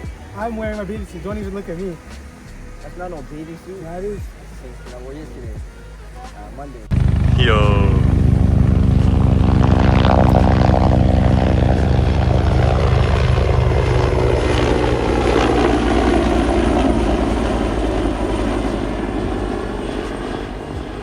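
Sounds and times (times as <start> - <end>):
helicopter rotor beating overhead: 6.9 - 21.0.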